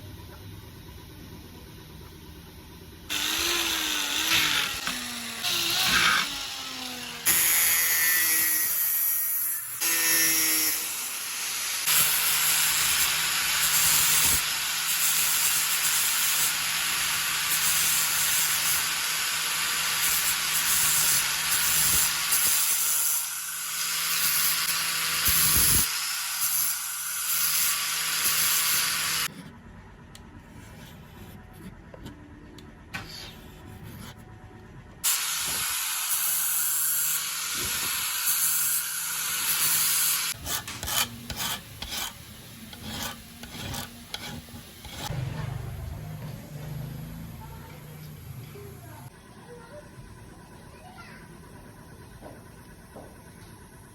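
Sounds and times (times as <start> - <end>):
power tool grinding steel: 3.1 - 29.3, 35.0 - 45.3.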